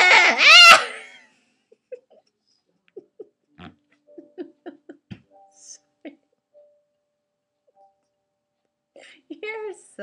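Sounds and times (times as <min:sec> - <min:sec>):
squeaky hiccups: 0:00.0 - 0:00.8.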